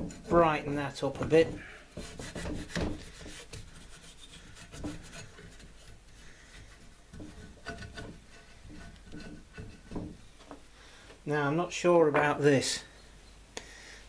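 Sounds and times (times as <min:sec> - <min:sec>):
hand scrubbing wax on wood: 0:01.1 - 0:10.1.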